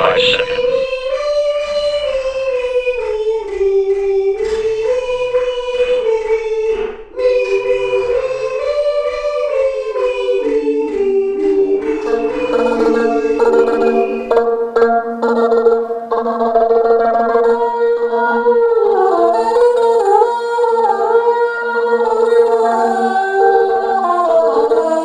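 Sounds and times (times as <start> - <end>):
choir singing slow melody: 7.2 - 14.4.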